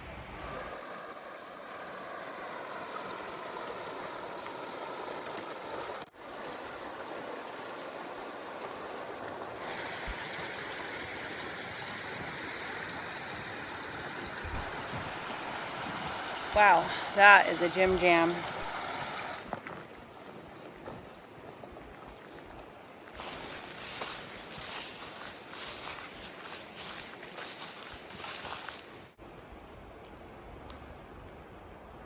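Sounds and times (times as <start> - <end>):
river water rushing: 0.1 - 19.4, 23.2 - 29.1.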